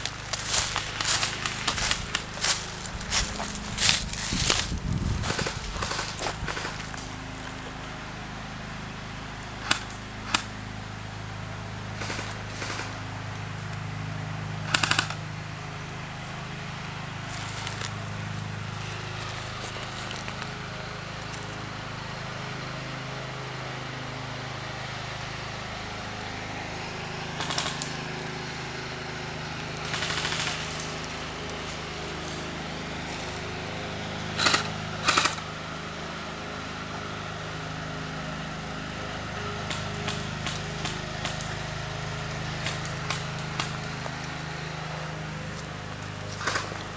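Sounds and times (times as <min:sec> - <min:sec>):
steady low hum: 0:00.0 - 0:46.9
airsoft guns firing: 0:09.6 - 0:10.5, 0:12.0 - 0:13.0, 0:14.7 - 0:15.2, 0:27.4 - 0:27.9, 0:29.8 - 0:30.9, 0:34.4 - 0:35.4.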